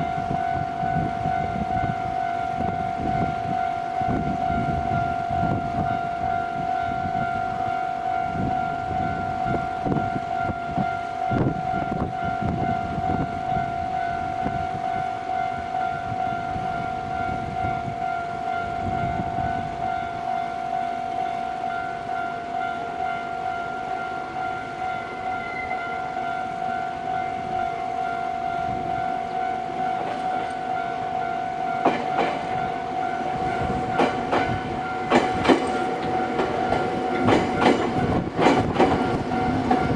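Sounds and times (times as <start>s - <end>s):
level-crossing warning bell: 0.0s - 39.9s
train rumbling: 0.0s - 39.9s
train wheels clacking on rail joints: 29.2s - 31.0s, 31.7s - 39.9s.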